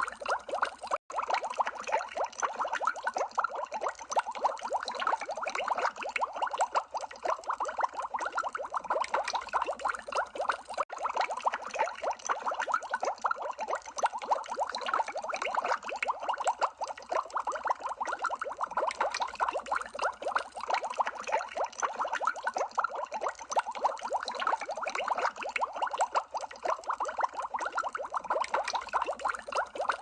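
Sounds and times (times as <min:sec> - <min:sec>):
water bubbling: 0:00.0 - 0:30.0.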